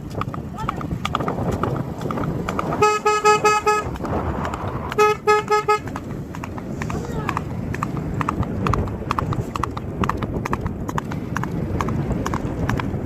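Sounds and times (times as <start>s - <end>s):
horse hooves clip-clopping: 0.0s - 13.0s
vehicle horn beeps: 2.8s - 3.9s, 5.0s - 5.9s.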